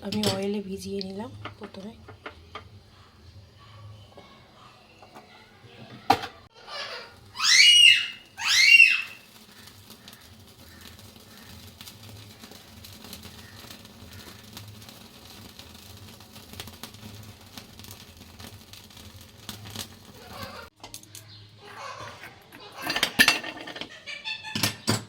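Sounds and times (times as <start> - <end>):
high squeaky chirps: 6.5 - 9.4
charcoal crackling: 6.5 - 24.2.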